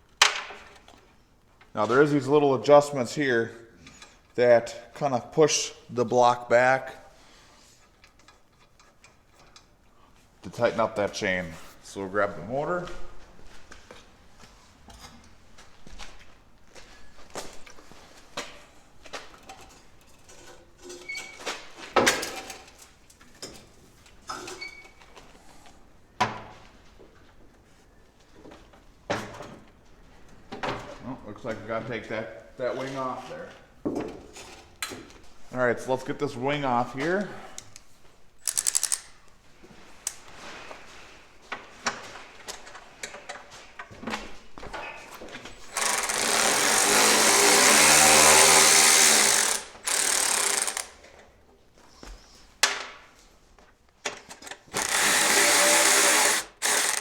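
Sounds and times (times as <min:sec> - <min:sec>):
ratchet wrench clicking: 0:38.4 - 0:39.1, 0:48.8 - 0:50.9, 0:54.8 - 0:57.0.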